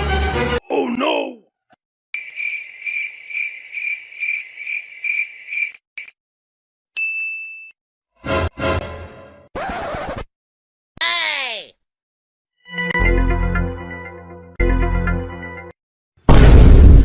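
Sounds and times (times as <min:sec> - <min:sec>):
crickets chirping: 0:02.2 - 0:06.1.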